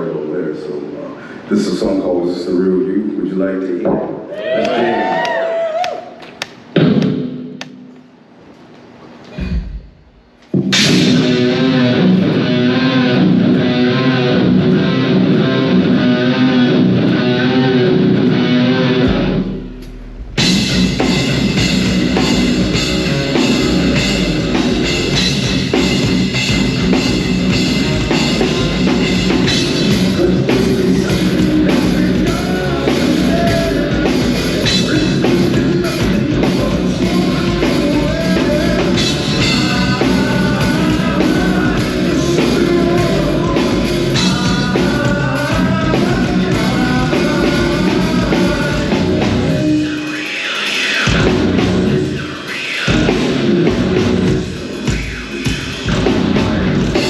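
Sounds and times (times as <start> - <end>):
pounding drum kit: 6.6 - 7.7, 9.3 - 57.0
distorted guitars and bass: 6.8 - 7.5, 9.3 - 50.2, 50.8 - 57.0
person singing: 27.9 - 51.3.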